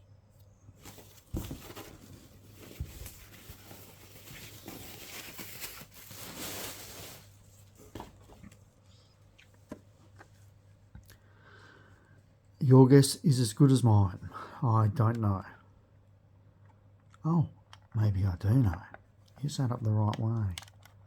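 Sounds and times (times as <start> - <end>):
packaging rustling and crinkling: 0.8 - 8.6.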